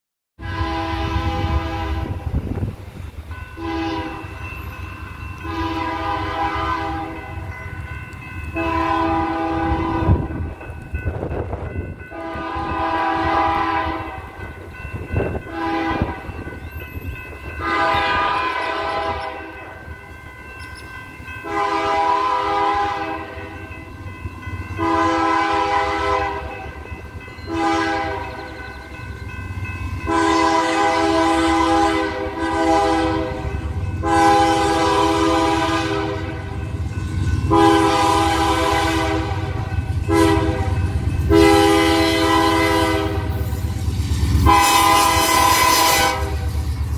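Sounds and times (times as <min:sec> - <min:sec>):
locomotive air horn blasts: 0:00.4 - 0:02.4, 0:03.6 - 0:04.4, 0:05.4 - 0:07.5, 0:08.6 - 0:10.4, 0:12.1 - 0:14.4, 0:15.4 - 0:16.3, 0:17.6 - 0:19.6, 0:21.4 - 0:23.6, 0:24.8 - 0:26.7, 0:27.5 - 0:28.5, 0:30.1 - 0:36.6, 0:37.5 - 0:43.5, 0:44.4 - 0:46.6
freight train rumbling past: 0:00.4 - 0:46.9.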